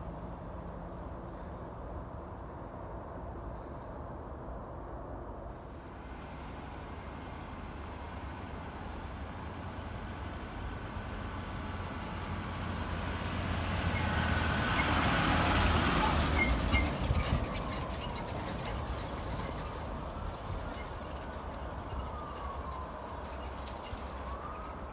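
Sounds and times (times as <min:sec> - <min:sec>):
heavy truck engine approaching: 0:05.7 - 0:24.9.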